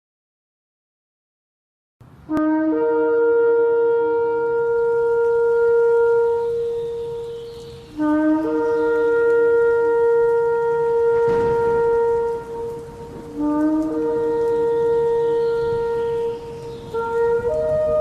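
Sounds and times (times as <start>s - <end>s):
ram's horn blasts: 2.3s - 18.0s.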